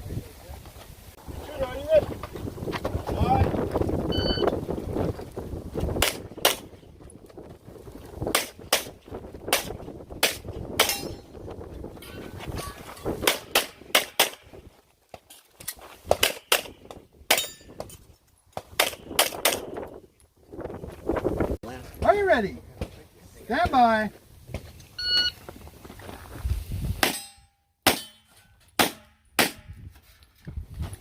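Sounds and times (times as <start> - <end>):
pistol shots in quick pairs: 6.0 - 6.7, 13.2 - 14.5, 16.1 - 17.4, 18.8 - 19.8.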